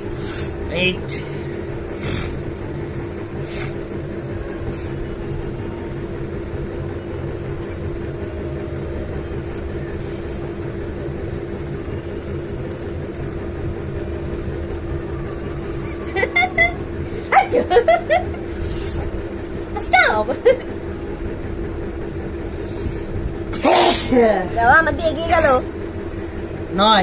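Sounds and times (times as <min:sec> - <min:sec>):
steady mechanical hum: 0:00.0 - 0:27.0
short hissing sounds: 0:18.6 - 0:19.0.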